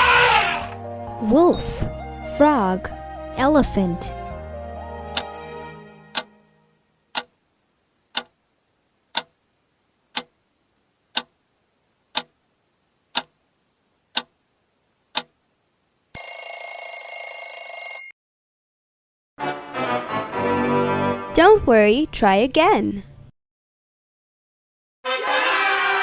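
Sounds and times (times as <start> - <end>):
countdown timer ticking: 6.1 - 6.3, 7.1 - 7.3, 8.1 - 8.3, 9.1 - 9.3.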